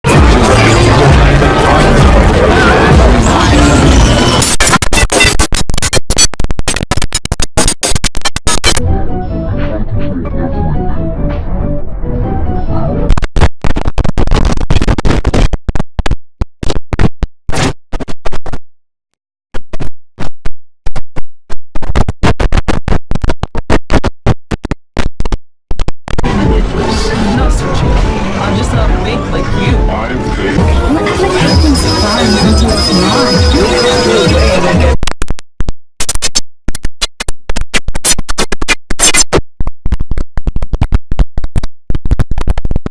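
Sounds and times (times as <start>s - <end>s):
stuttering processed computer chime: 0.1s - 5.4s, 27.9s - 34.9s.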